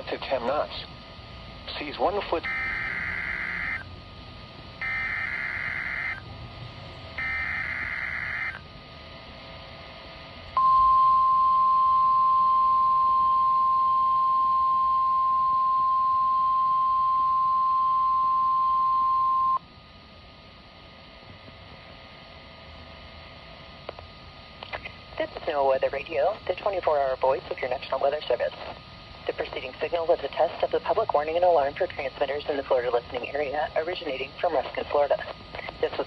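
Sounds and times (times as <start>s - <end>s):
faint radio hiss: 0.0s - 36.0s
buzzy digital data bursts: 1.7s - 3.9s, 4.8s - 6.2s, 7.2s - 8.6s
steady high alarm tone: 2.4s - 3.9s, 4.8s - 6.2s, 7.2s - 8.6s, 10.6s - 19.6s.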